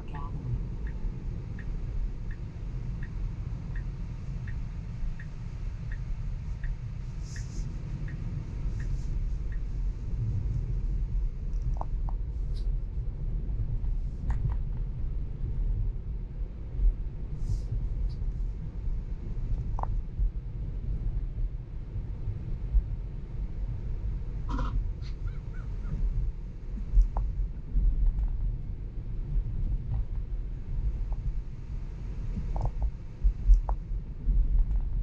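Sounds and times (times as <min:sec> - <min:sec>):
turn signal ticking: 0:00.0 - 0:10.2
road and tyre rumble: 0:00.0 - 0:35.0.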